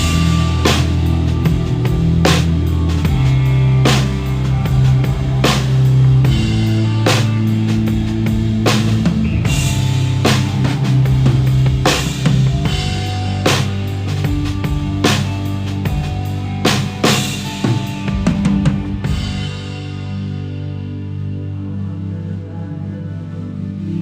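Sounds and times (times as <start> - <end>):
live band playing: 0.0 - 21.0
drum kit: 0.0 - 21.4
low bass notes: 0.0 - 24.0.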